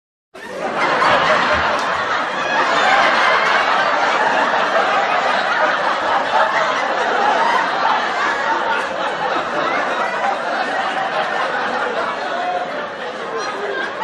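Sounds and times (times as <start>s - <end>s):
crowd laughing: 0.4s - 14.0s
applause: 1.6s - 5.1s.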